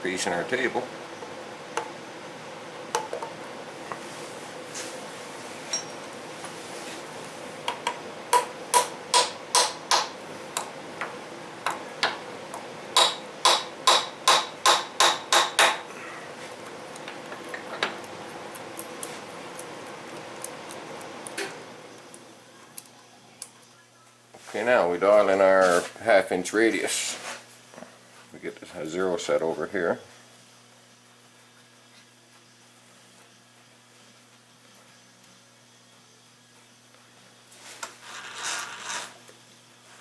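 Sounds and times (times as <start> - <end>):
hammer tapping metal: 7.8 - 10.7, 13.0 - 15.9.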